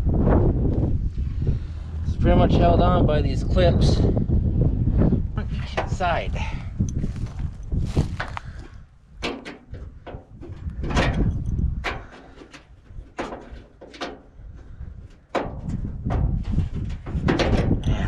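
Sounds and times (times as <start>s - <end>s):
wind rumble on microphone: 0.0s - 18.0s
sharp metal clicks and knocks: 6.8s - 18.0s.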